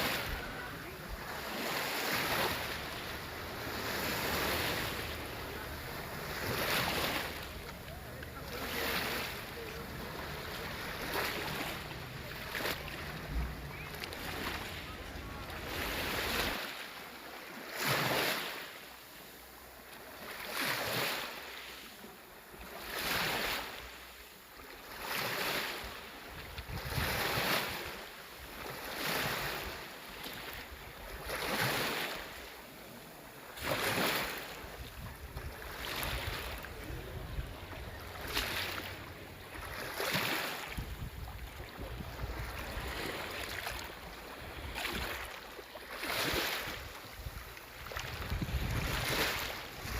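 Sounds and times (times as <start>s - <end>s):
sea waves washing onto shore: 0.0s - 49.9s
wind rumble on microphone: 26.4s - 27.4s, 40.7s - 43.2s, 46.8s - 49.9s.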